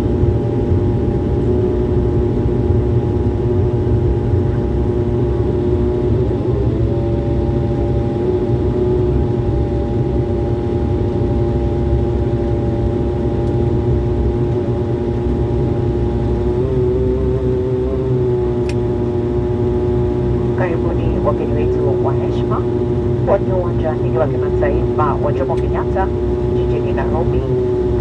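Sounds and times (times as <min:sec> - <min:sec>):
airliner engine hum: 0:00.0 - 0:28.0
heavy low rumble: 0:20.4 - 0:28.0.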